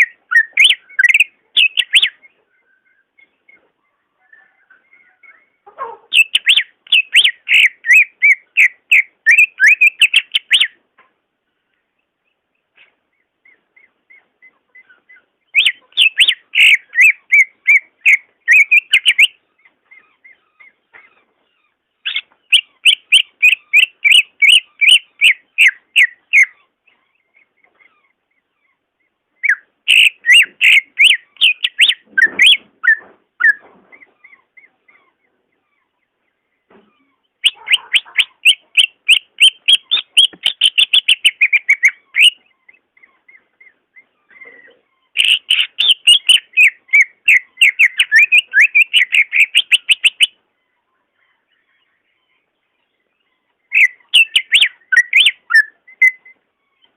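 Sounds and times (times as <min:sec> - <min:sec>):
bird singing loud whistled notes: 0:00.0 - 0:03.6, 0:04.2 - 0:10.8, 0:14.9 - 0:19.4, 0:22.0 - 0:26.6, 0:29.4 - 0:33.6, 0:37.4 - 0:42.4, 0:45.2 - 0:50.4, 0:53.7 - 0:56.4
quiet bird chirps: 0:00.0 - 0:56.9.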